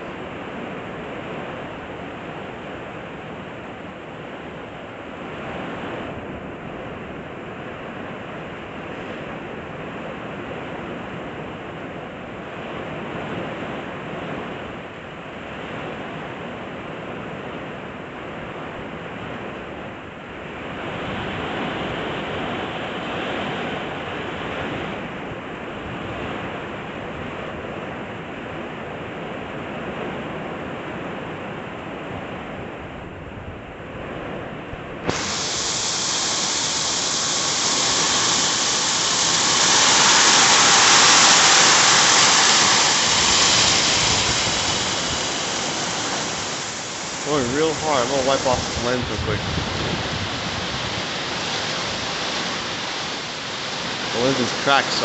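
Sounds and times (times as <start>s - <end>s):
storm wind: 0.0s - 55.0s
heavy rain: 35.1s - 55.0s.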